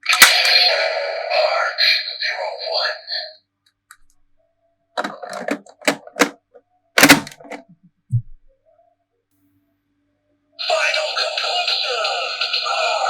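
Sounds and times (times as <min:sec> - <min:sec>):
loud plastic snap: 0:07.0 - 0:07.7.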